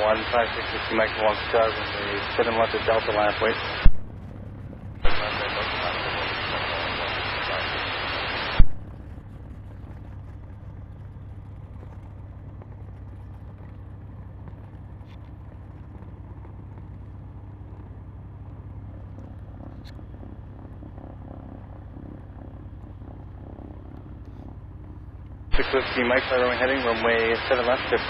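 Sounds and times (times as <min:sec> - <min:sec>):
twin piston engines idling: 0:00.0 - 0:08.5, 0:24.2 - 0:28.0.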